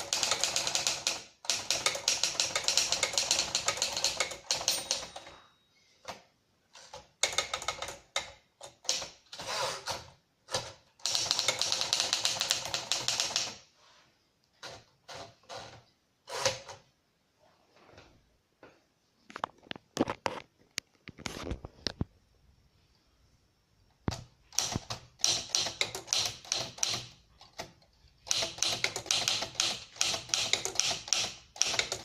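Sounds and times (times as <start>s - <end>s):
typewriter keystrokes: 0.0s - 5.3s, 6.8s - 13.6s, 24.1s - 32.0s.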